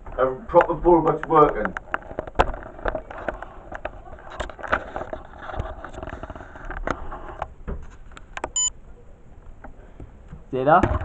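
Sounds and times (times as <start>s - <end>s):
faint muffled voices: 2.8s - 5.5s.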